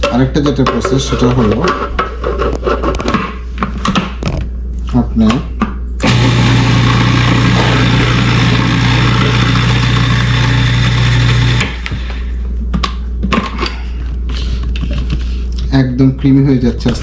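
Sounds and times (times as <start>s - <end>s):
food processor motor running: 6.0s - 12.0s.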